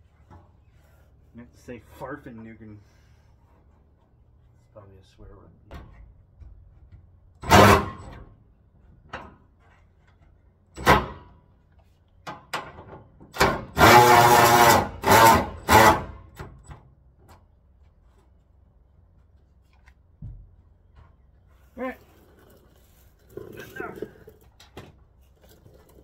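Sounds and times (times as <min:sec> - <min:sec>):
tool knocks and clanks: 0:05.7 - 0:08.3, 0:12.2 - 0:13.8.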